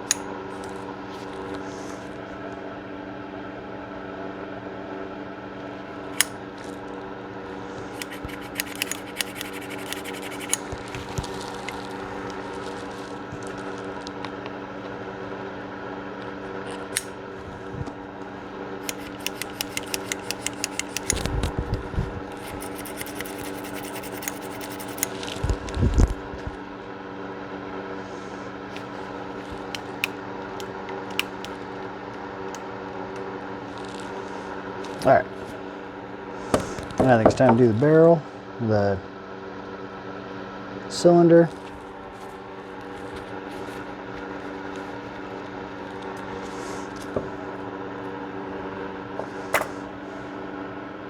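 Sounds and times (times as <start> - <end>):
steady hum: 0.0 - 39.1
gun parts clicking and rattling: 7.9 - 12.0, 18.8 - 21.5.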